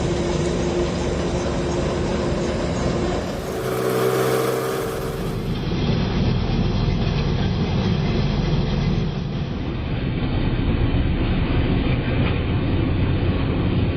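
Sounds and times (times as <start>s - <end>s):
harvesting machinery running: 0.0s - 6.1s.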